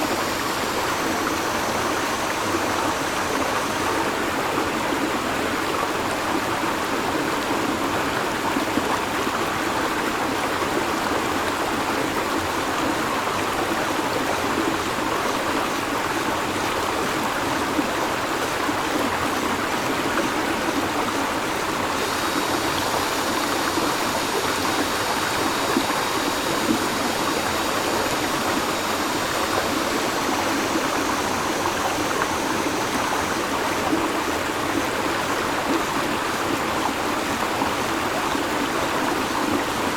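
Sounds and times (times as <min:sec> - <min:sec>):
cicadas buzzing: 0:00.0 - 0:06.1, 0:18.1 - 0:39.9
river flowing: 0:00.0 - 0:39.9.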